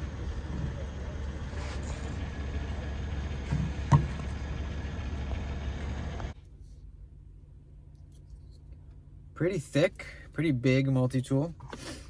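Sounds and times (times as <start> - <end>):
vehicle engine idling: 0.0 - 6.5.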